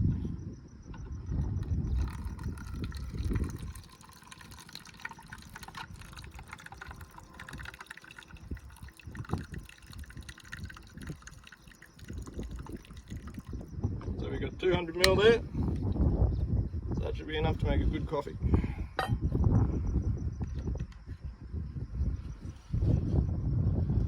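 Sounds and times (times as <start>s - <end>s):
water trickling into reservoir: 1.2s - 16.0s.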